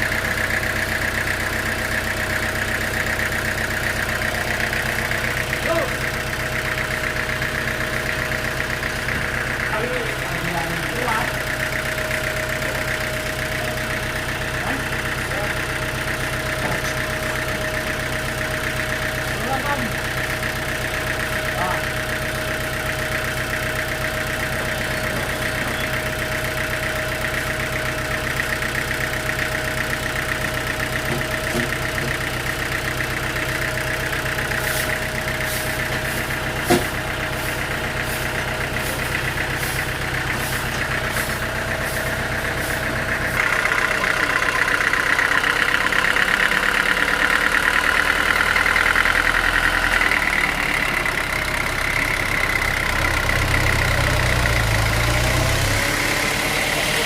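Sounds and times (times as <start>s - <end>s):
sawmill machinery running: 0.0s - 57.0s.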